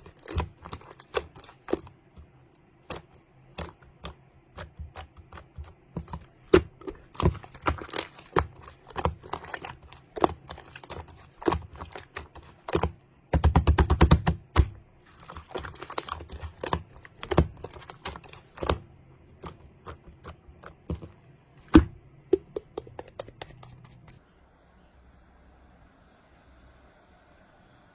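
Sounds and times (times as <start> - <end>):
sharp clicks and taps: 19.4 - 24.2.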